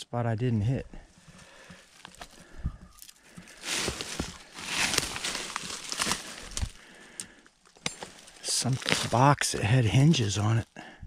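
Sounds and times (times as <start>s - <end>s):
footsteps in undergrowth: 1.1s - 10.2s
twigs snapping and crunching: 1.9s - 9.4s.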